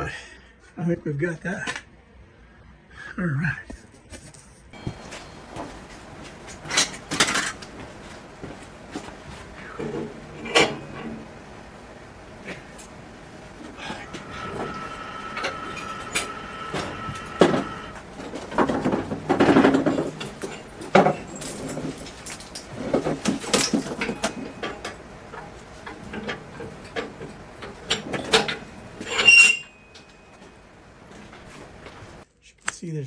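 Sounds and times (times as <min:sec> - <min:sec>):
steady whine: 0:03.6 - 0:32.2
metal clanks and scrapes: 0:13.8 - 0:25.0, 0:25.8 - 0:30.5.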